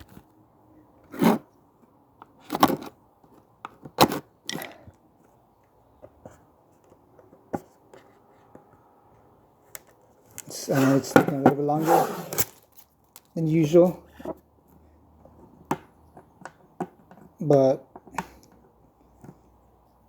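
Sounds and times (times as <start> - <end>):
plastic case clicks and scrapes: 2.4 - 3.0, 3.7 - 4.9.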